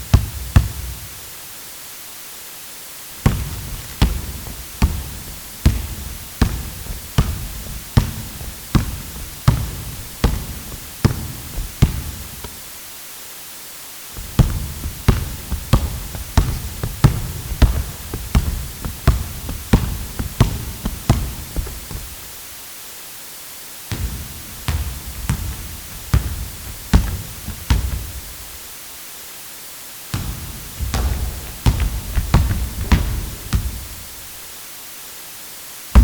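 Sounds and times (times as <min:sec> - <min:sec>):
basketball bouncing on hard court: 0:00.0 - 0:01.1, 0:03.2 - 0:12.6, 0:14.2 - 0:22.4, 0:23.9 - 0:28.7, 0:30.1 - 0:34.4
steady hiss: 0:00.0 - 0:36.0.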